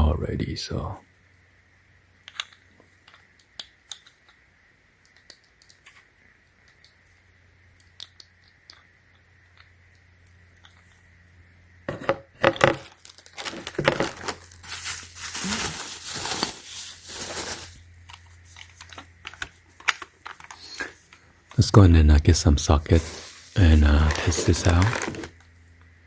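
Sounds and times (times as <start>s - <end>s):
packaging tearing and crinkling: 12.7s - 21.6s, 22.9s - 25.4s.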